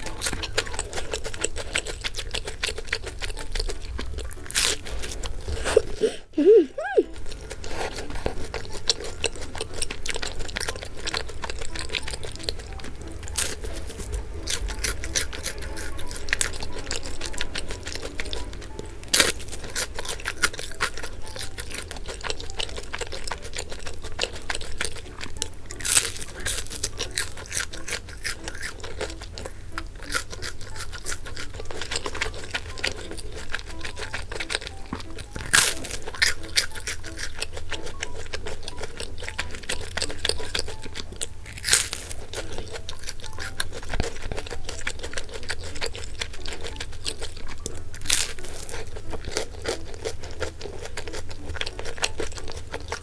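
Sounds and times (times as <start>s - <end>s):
crunchy chewing and biting: 0.0s - 6.4s, 7.0s - 53.0s.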